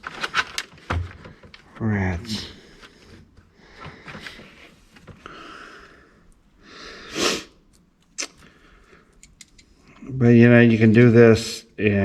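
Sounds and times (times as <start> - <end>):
soft rushing breaths: 2.3 - 7.6
loud sniff: 6.6 - 7.6.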